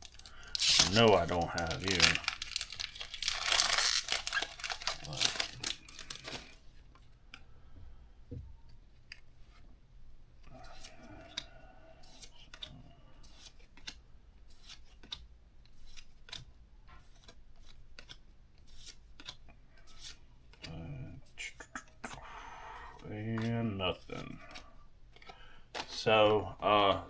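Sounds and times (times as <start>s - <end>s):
trading cards sliding and clicking: 10.6s - 20.7s.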